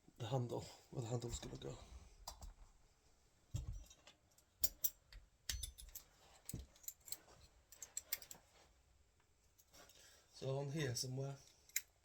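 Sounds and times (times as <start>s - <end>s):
hardware and tools clicking: 3.6s - 8.5s, 11.4s - 12.0s.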